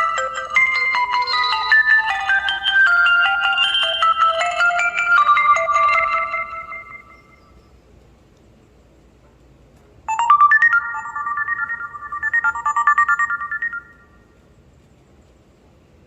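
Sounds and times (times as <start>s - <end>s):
phone ringtone melody: 0.0s - 7.4s, 10.1s - 14.2s.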